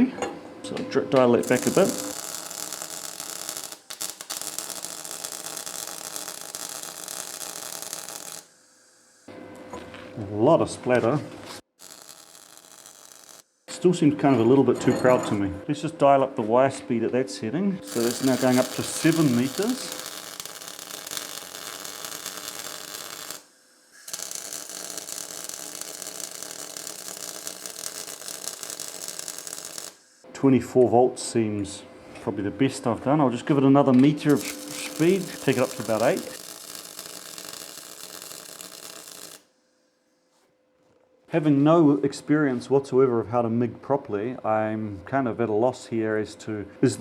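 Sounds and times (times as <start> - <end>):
welding arc crackling: 1.2 - 9.3, 10.2 - 13.6, 17.8 - 30.2, 34.3 - 39.5.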